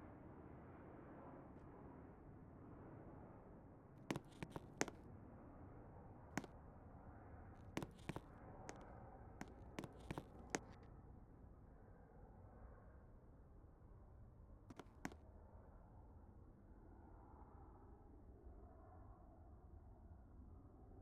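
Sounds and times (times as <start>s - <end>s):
sharp clicks or taps: 4.1s - 5.0s, 7.8s - 8.8s, 9.4s - 10.8s, 14.7s - 15.2s.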